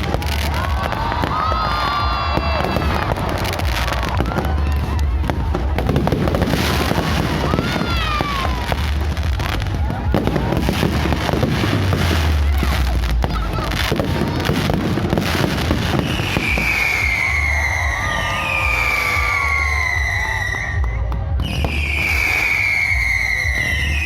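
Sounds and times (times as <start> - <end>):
fireworks bangs and crackles: 0.0 - 24.0.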